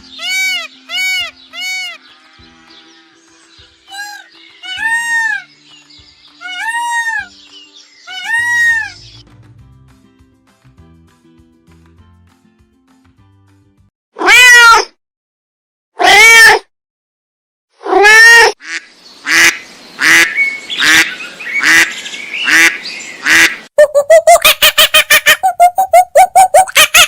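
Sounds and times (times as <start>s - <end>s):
animal calling: 3.9s - 5.5s, 6.4s - 7.3s, 8.0s - 9.2s, 17.8s - 27.0s.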